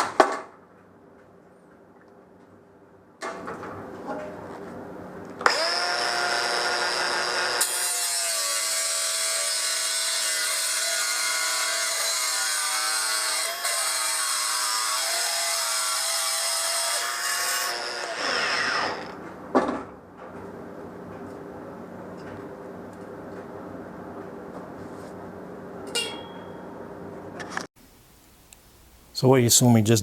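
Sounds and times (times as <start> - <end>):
electric cutting tool whining: 5.4 - 19.2.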